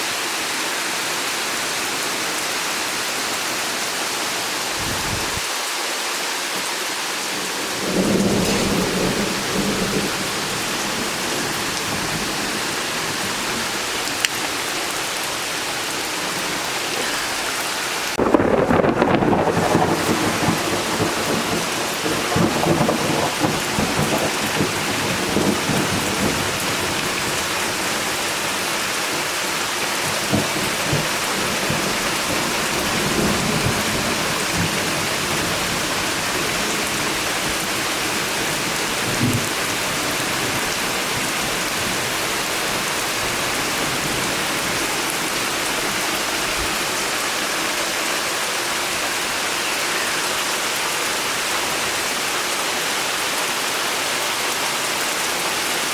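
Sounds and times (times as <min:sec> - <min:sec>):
heavy rain pouring: 0:00.0 - 0:55.9
thunder rumbling: 0:04.8 - 0:05.4, 0:07.6 - 0:15.2, 0:18.1 - 0:47.0.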